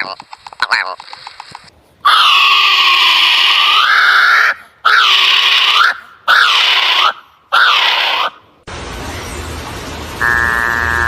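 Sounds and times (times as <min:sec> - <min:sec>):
bird screaming: 0:02.1 - 0:08.4.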